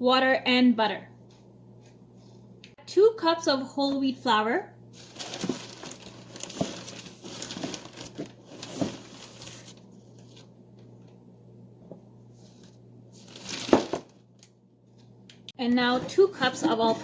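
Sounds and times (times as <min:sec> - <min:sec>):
flour bag crinkling: 0:05.0 - 0:10.5, 0:13.2 - 0:14.6.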